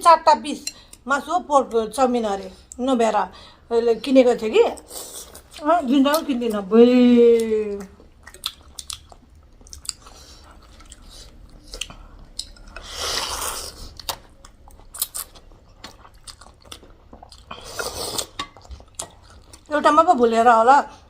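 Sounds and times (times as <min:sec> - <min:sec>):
chewing with wet mouth clicks: 0:07.7 - 0:12.9, 0:13.9 - 0:19.7.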